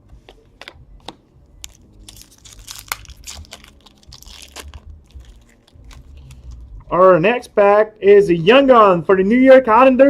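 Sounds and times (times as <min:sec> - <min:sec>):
wrapper tearing and crinkling: 0:01.6 - 0:06.8.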